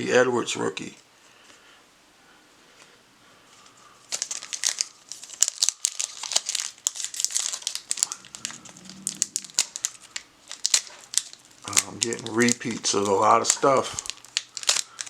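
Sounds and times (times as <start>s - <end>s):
plastic wrapper crinkling: 3.5s - 15.0s.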